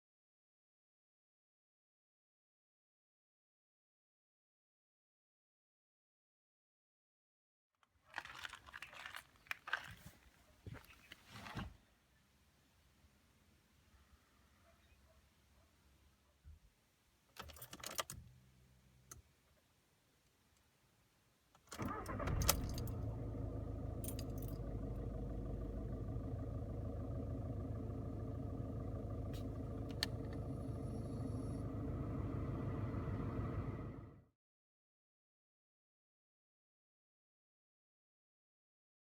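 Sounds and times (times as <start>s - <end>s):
diesel engine starting and idling: 21.8s - 34.2s.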